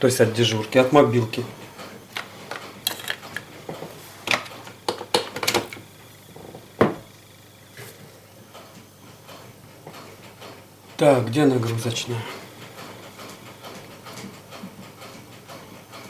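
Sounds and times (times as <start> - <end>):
objects clicking on a workbench: 2.1 - 5.8.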